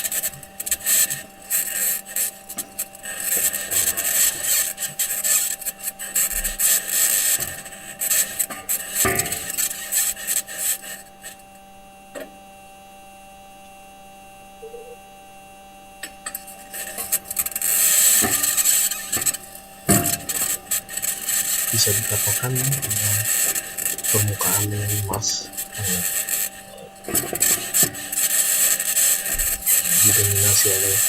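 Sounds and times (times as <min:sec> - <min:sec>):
metal wheels grinding over rocks: 0:00.0 - 0:11.3, 0:16.3 - 0:31.0
faint steady tones: 0:00.0 - 0:31.0.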